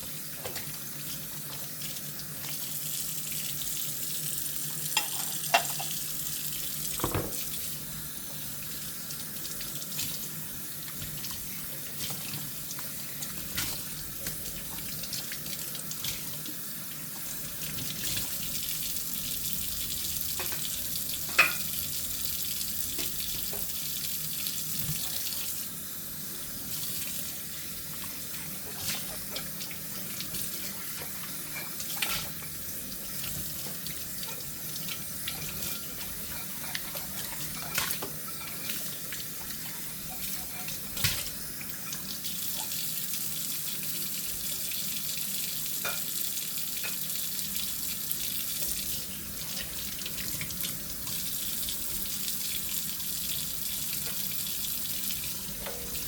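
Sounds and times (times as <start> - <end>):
dishes clinking: 5.0 - 6.0, 21.3 - 21.7, 55.5 - 56.0
tap running into sink: 5.0 - 6.0, 6.9 - 7.6, 22.9 - 23.8.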